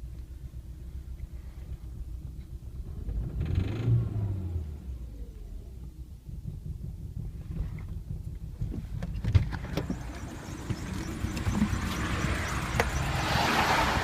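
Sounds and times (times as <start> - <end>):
engine idling roughly: 5.3 - 14.0.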